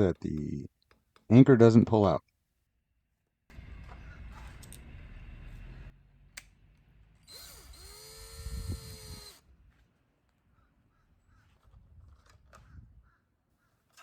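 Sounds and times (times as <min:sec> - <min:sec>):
cordless drill motor whine: 0:07.2 - 0:09.5.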